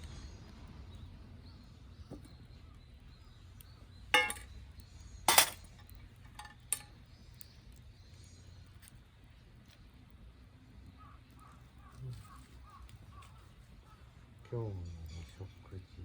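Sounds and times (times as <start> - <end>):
cooking gear knocking: 4.2 - 4.5, 5.3 - 6.9.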